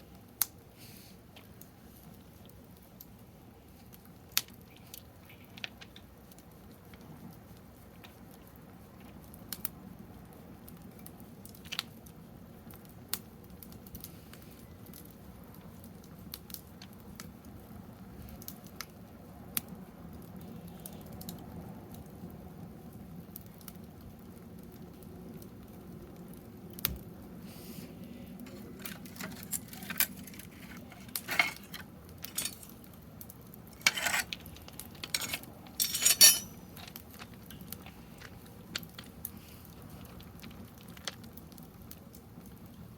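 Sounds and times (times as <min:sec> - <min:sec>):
wood fire crackling and popping: 0:00.0 - 0:42.9
clatters and scrapes: 0:28.4 - 0:32.8, 0:33.7 - 0:39.1.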